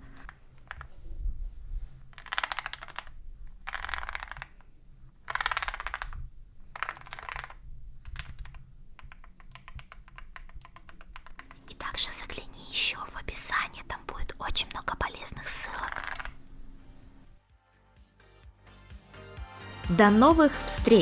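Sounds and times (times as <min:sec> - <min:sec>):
mechanical keyboard typing: 0:00.0 - 0:00.9, 0:02.1 - 0:11.8, 0:15.4 - 0:16.4.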